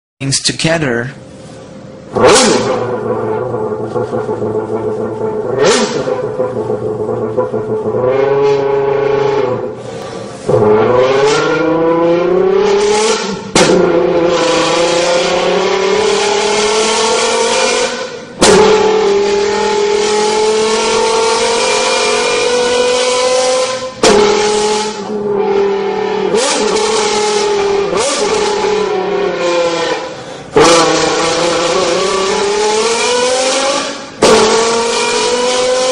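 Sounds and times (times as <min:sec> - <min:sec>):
man imitating engine revving: 0:02.1 - 0:35.9.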